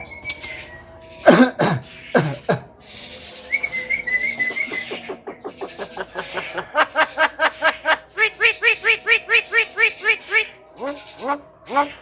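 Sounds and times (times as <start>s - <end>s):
bird whistle: 0.0s - 0.9s, 3.4s - 6.8s
harsh bird calls: 0.0s - 12.0s
short pulsing bird sounds: 0.0s - 12.0s.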